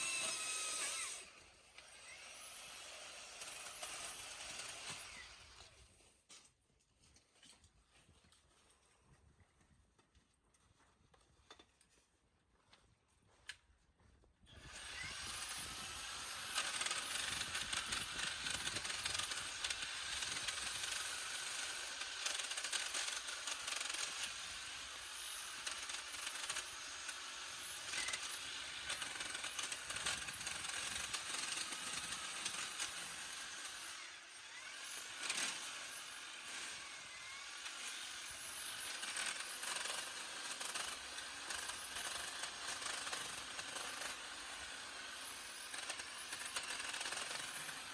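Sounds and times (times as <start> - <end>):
hedge trimmer cutting stems: 0.0 - 2.3.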